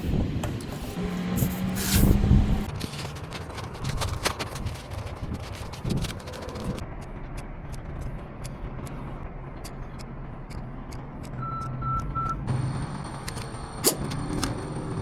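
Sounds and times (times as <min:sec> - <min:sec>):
sharp clicks: 0:06.0 - 0:12.2
reversing alarm beeps: 0:11.4 - 0:12.4.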